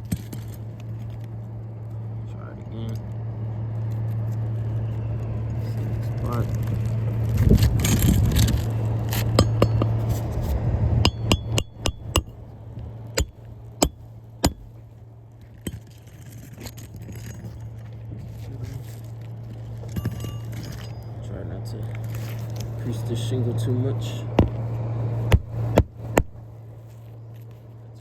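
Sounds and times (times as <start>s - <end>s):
roofing tool scraping: 7.2s - 12.4s, 15.5s - 21.0s
sharp metal clinks: 9.4s - 10.1s, 11.0s - 12.3s, 19.8s - 21.4s.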